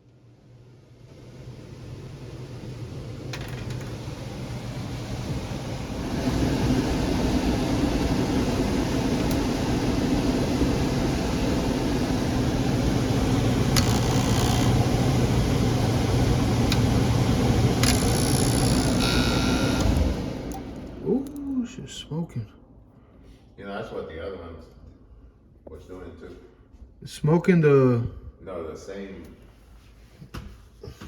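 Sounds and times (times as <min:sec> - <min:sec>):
low electrical hum: 0:00.0 - 0:30.2
sharp clicks: 0:13.8 - 0:14.8, 0:17.8 - 0:21.4.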